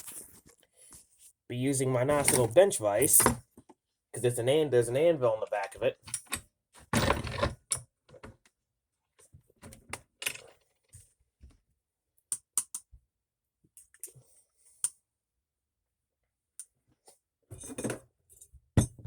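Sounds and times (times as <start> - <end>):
small metallic clicks and taps: 12.3 - 12.9.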